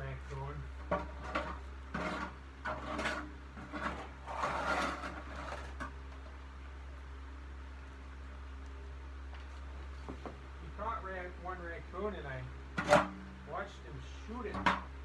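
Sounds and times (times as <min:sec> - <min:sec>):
fan hum: 0:00.0 - 0:15.0
junk scraping and rustling: 0:00.3 - 0:06.4, 0:12.7 - 0:13.3.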